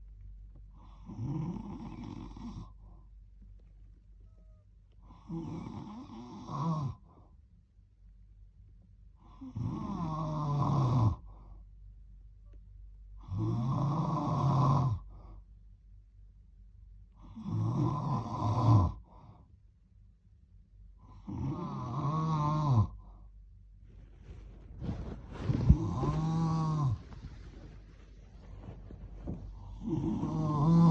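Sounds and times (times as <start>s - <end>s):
person snoring: 5.1s - 7.0s, 21.0s - 23.0s, 25.3s - 27.6s, 29.2s - 30.9s.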